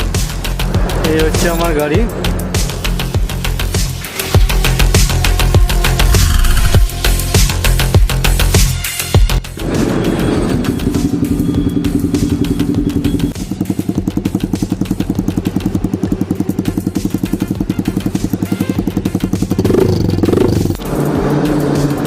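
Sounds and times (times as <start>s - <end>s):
motorcycle exhaust idling: 9.8s - 20.8s.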